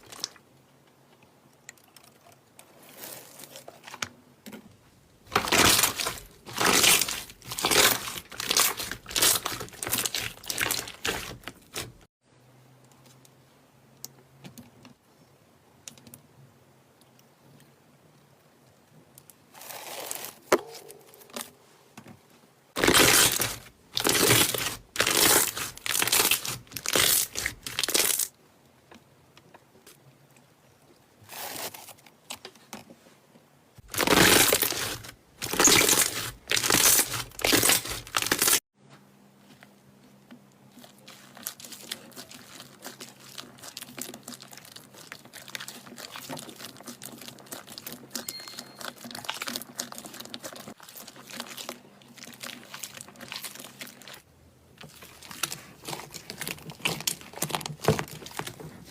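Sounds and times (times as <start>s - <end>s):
slime squished by hand crackling: 5.3s - 12.0s, 22.8s - 28.3s, 33.9s - 38.6s.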